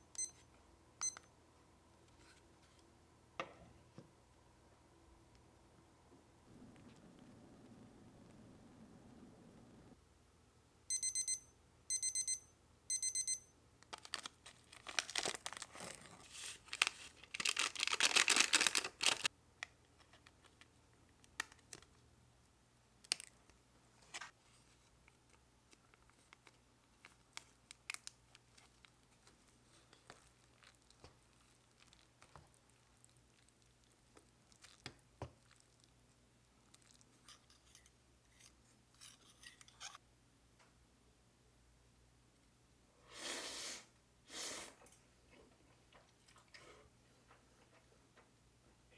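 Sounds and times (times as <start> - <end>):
electronic appliance beeps: 0.0 - 0.4, 1.0 - 1.3, 10.9 - 13.6
plastic packaging crinkling and tearing: 13.9 - 19.3, 25.7 - 29.4.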